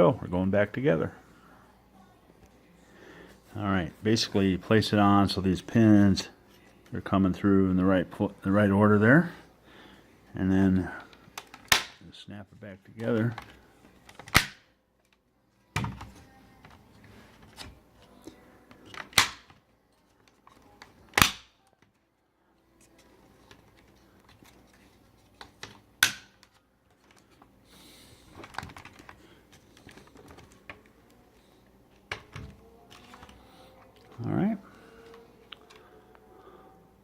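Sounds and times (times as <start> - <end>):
sharp plastic snaps: 11.3 - 12.0, 14.1 - 15.2, 18.8 - 19.6, 20.8 - 21.6, 25.4 - 27.2.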